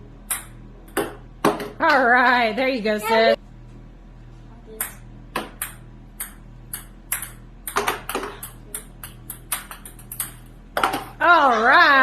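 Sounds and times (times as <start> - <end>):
ping pong balls bouncing: 0.2 - 2.0, 4.8 - 11.2.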